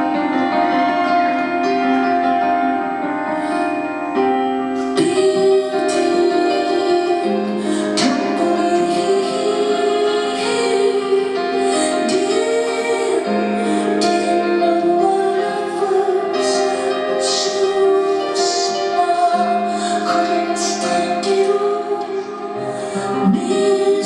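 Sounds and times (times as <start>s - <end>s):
woman singing: 4.8s - 24.0s.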